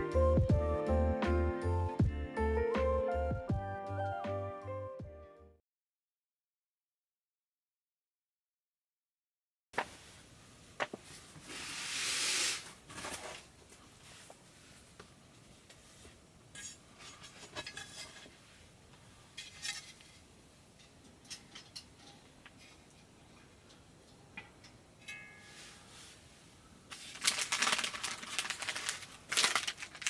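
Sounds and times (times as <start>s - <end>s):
brief hiss: 11.4s - 12.8s
utensils clinking on dishes: 20.9s - 22.3s, 25.0s - 25.8s.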